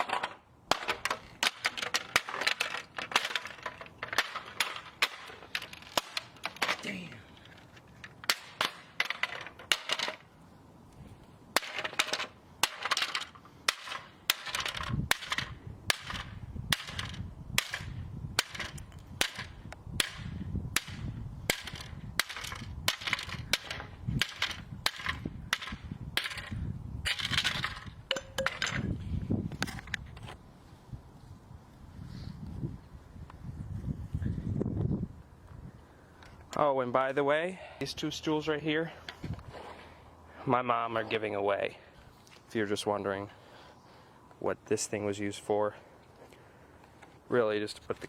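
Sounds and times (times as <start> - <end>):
hard blows smashing plastic toy: 0.0 - 6.9, 11.6 - 27.9
plastic pieces cracking and rattling: 0.0 - 10.3.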